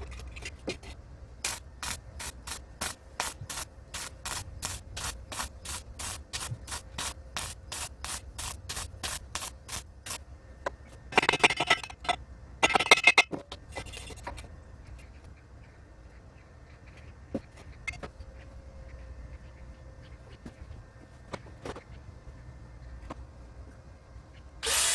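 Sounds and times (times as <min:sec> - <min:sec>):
hissing bursts: 0:01.4 - 0:10.2, 0:24.6 - 0:24.9.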